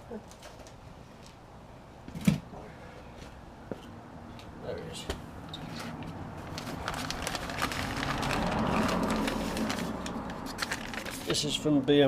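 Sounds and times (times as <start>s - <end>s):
crackling rustling handling noise: 5.4s - 11.7s.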